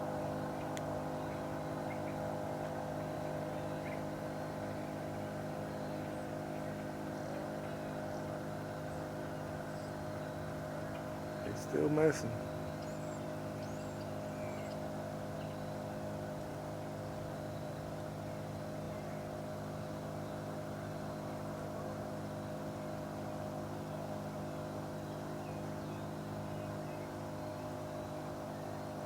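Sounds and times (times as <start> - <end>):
engine droning: 0.0 - 17.0.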